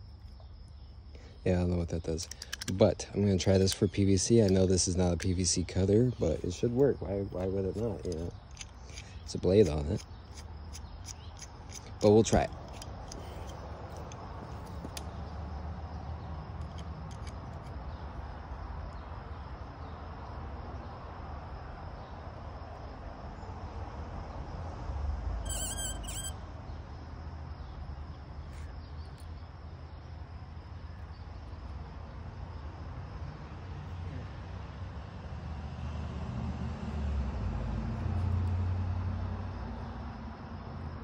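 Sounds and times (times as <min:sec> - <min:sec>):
outdoor background rumble: 0:00.0 - 0:41.0
short high chirping: 0:25.4 - 0:26.4.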